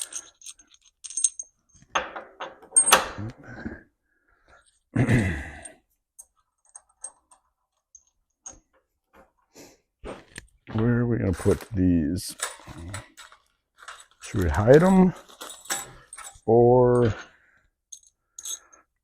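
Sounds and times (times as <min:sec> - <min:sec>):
metal hardware clinking: 0:00.0 - 0:03.2, 0:11.4 - 0:17.2, 0:17.9 - 0:18.8.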